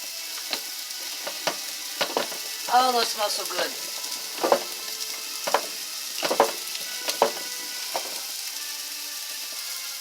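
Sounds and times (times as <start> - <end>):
steady hiss: 0.0 - 10.0
meat grinder creaking knock: 0.4 - 2.5, 4.0 - 8.2.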